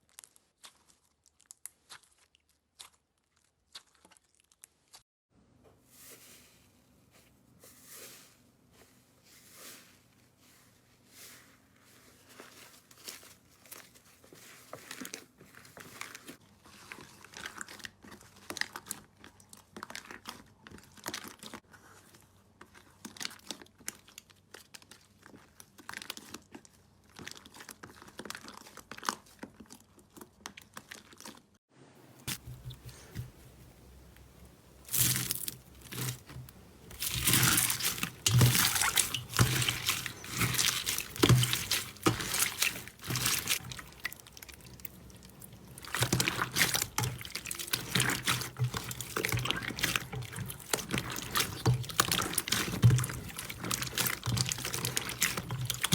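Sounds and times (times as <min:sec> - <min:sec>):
crunchy slime being squeezed: 0:34.8 - 0:55.9.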